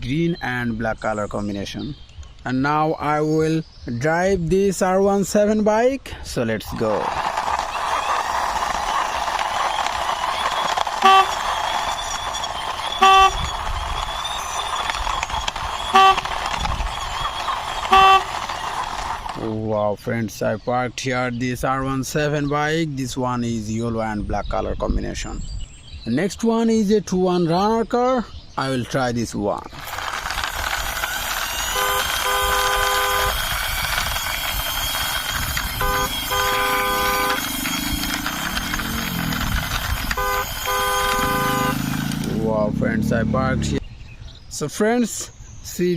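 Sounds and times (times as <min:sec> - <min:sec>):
toy motorbike rushing noise: 0:06.7 - 0:19.6, 0:29.6 - 0:43.8
horn honks: 0:10.6 - 0:13.7, 0:15.6 - 0:19.3, 0:31.5 - 0:33.6, 0:34.8 - 0:42.4.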